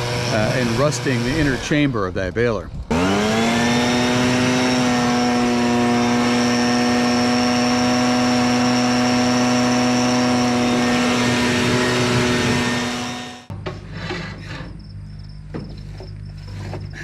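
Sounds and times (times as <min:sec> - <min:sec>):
blower high whine: 0:00.0 - 0:01.9, 0:02.9 - 0:13.5.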